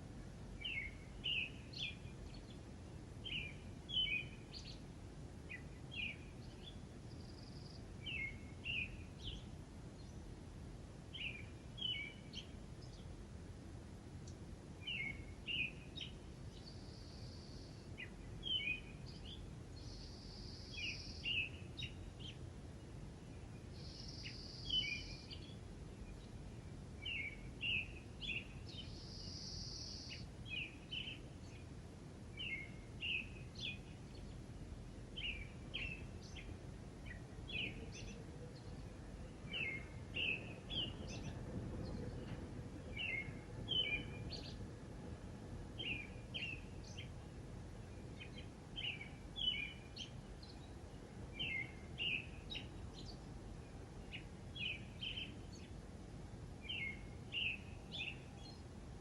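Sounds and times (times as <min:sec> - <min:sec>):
songbird singing: 0:00.0 - 0:59.0
low background rumble: 0:19.0 - 0:56.7.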